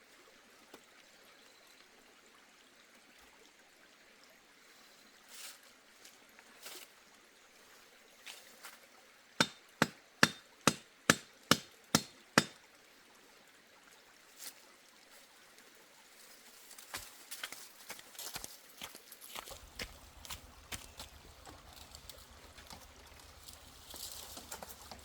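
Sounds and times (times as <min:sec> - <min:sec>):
hammer strikes: 0:09.4 - 0:12.6.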